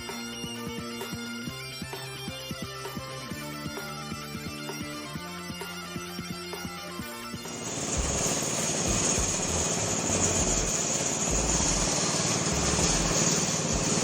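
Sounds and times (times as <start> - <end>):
plastic shredding machine: 7.5 - 14.0.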